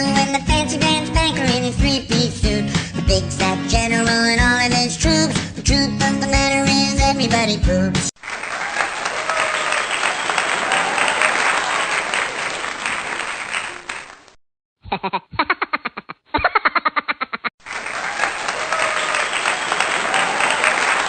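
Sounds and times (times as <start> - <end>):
crowd applauding and cheering: 8.2 - 14.4, 17.6 - 21.0.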